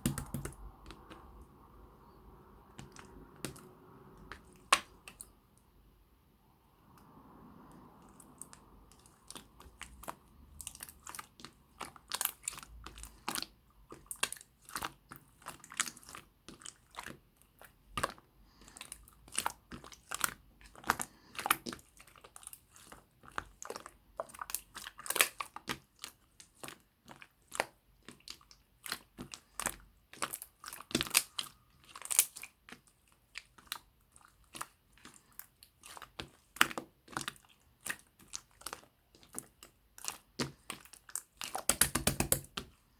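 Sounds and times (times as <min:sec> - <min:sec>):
slime clicking and popping: 0:00.0 - 0:01.2, 0:35.9 - 0:42.7.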